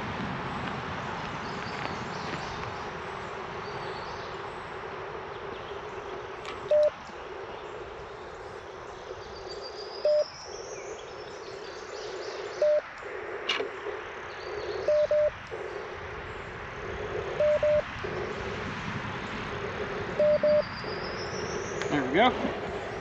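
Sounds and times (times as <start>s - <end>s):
radio static hiss: 2.4s - 10.3s, 12.0s - 23.0s
morse beep: 6.7s - 7.0s, 10.0s - 10.3s, 12.6s - 12.8s, 14.8s - 15.4s, 17.4s - 18.2s, 20.2s - 21.1s.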